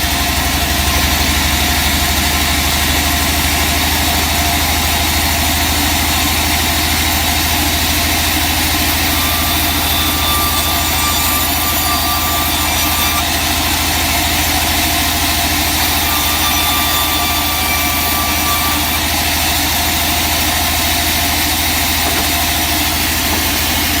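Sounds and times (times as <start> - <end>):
sawmill engine drone: 0.0 - 24.0
faint high whine: 8.8 - 13.8.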